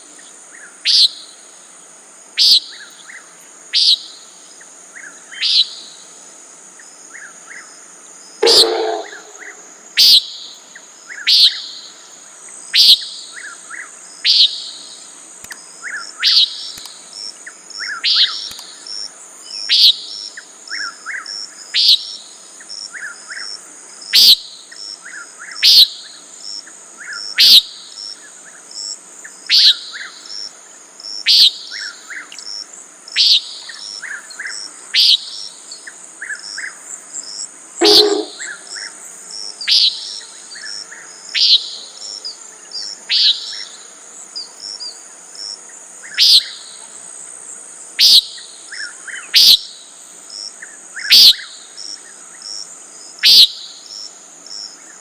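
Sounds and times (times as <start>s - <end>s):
high insect trill: 0.2s - 55.0s
nighthawk nasal peent call: 8.4s - 10.2s, 37.8s - 38.8s, 53.2s - 53.5s.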